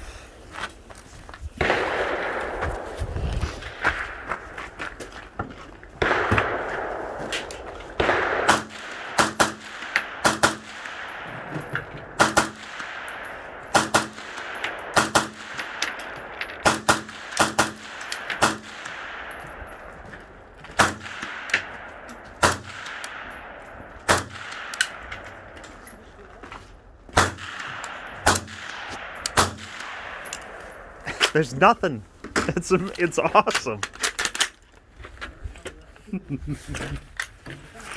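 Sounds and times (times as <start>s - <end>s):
suppressed rifle shots: 1.6s - 3.0s, 6.0s - 20.0s, 27.2s - 31.0s
gunshot echo: 1.6s - 4.4s, 6.0s - 19.6s.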